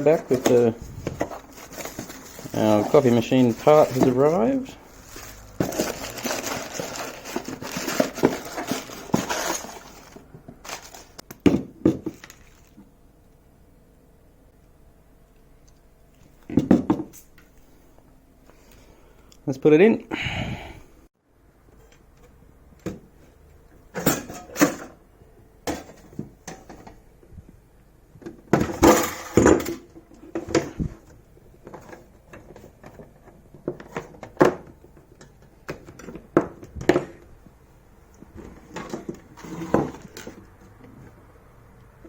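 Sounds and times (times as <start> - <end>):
coffee machine parts clattering: 0.0 - 11.2
parts rattling: 0.0 - 11.2.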